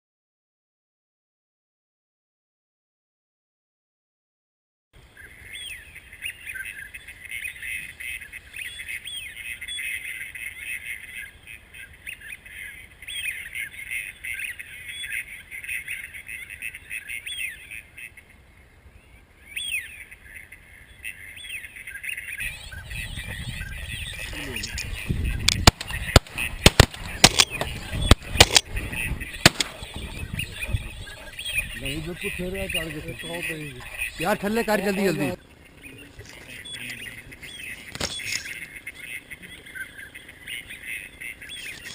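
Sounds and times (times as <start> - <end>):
ducks quacking: 5.4 - 18.4, 19.7 - 41.8
low rumbling noise: 22.4 - 37.9
shotgun shots: 25.5 - 30.1.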